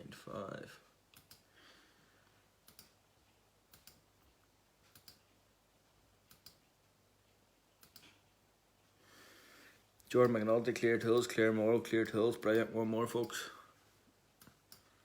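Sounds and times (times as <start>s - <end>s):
computer mouse clicks: 1.1s - 1.5s, 2.6s - 3.0s, 3.7s - 4.1s, 4.8s - 5.3s, 6.3s - 6.6s, 7.8s - 8.2s, 14.4s - 14.9s.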